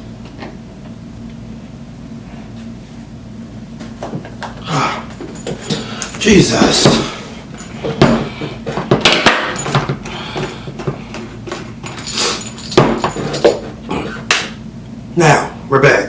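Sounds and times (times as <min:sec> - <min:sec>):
knocks and clicks of unpacking: 0:03.8 - 0:14.6.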